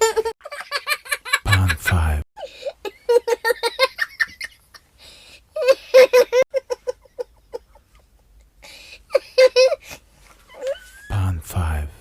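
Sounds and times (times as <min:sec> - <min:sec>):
breathy gasps for air: 0:05.0 - 0:05.5.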